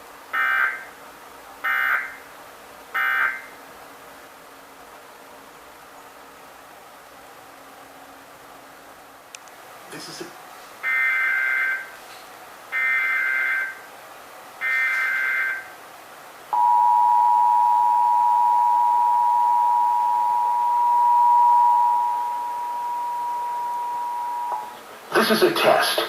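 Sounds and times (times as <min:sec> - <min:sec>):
steady two-tone alert signal: 0:10.9 - 0:11.9, 0:12.8 - 0:13.8, 0:14.6 - 0:15.7, 0:16.6 - 0:24.7.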